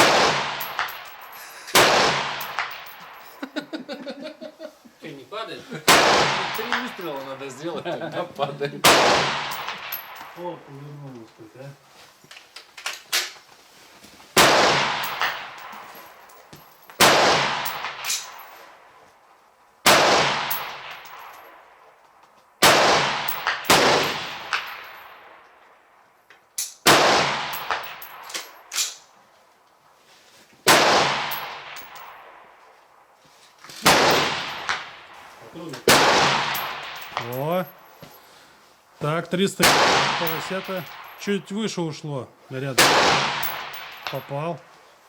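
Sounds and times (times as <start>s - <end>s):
rifle shots with echo: 0.0s - 1.1s, 1.8s - 2.9s, 5.9s - 7.4s, 8.8s - 10.3s, 14.4s - 15.8s, 17.0s - 18.4s, 19.8s - 21.3s, 22.6s - 24.9s, 26.9s - 28.0s, 30.7s - 32.0s, 33.8s - 35.0s, 35.8s - 37.3s, 39.6s - 41.2s, 42.8s - 44.3s.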